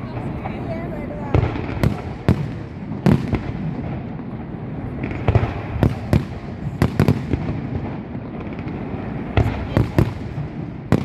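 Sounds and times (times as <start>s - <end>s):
fireworks rumble and crackle: 0.0s - 11.0s
sharp firework bangs: 0.0s - 11.0s.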